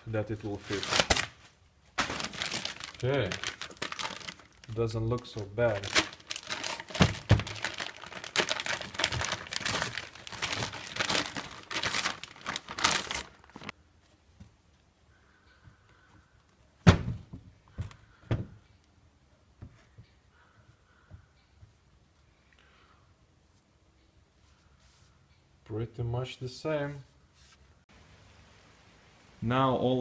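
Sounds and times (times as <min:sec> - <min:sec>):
plastic packaging crinkling: 0:00.6 - 0:01.4, 0:02.0 - 0:13.7
dull thunks: 0:16.8 - 0:18.6.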